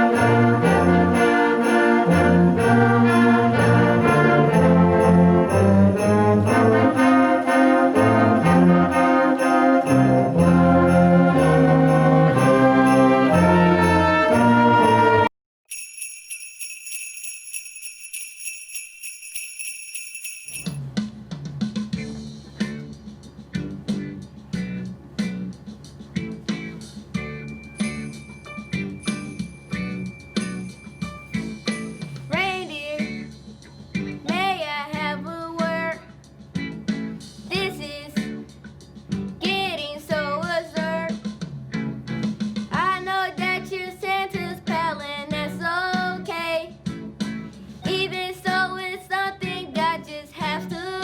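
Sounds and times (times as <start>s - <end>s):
music with steady beat: 0.0s - 14.7s, 20.8s - 34.2s
festive instrumental with sleigh bells: 0.0s - 21.0s, 26.8s - 33.6s
high steady bell-like ringing: 15.7s - 20.8s, 27.4s - 32.4s.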